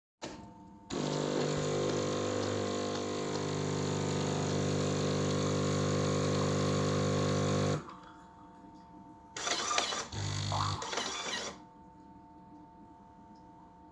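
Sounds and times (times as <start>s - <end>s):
coffee machine running: 0.9s - 7.9s
machine squeak: 10.8s - 11.6s.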